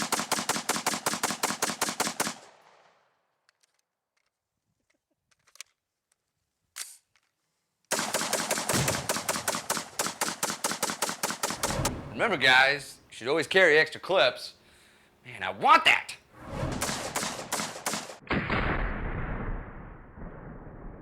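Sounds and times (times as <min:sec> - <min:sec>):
automatic gunfire bursts: 0:00.0 - 0:02.5, 0:07.9 - 0:12.0, 0:16.8 - 0:18.2.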